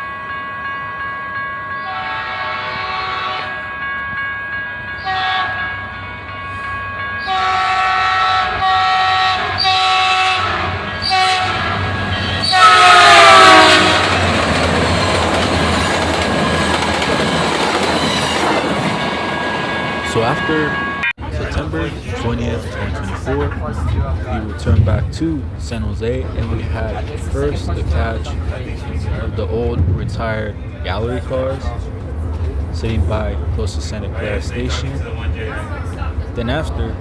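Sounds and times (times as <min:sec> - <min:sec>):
train horn blasts: 0:00.0 - 0:14.3
rumble of passing train: 0:00.0 - 0:37.0.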